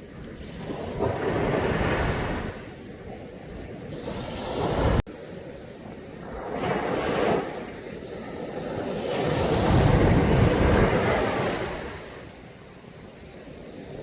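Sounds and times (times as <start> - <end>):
waves breaking on a beach: 0.0 - 14.0.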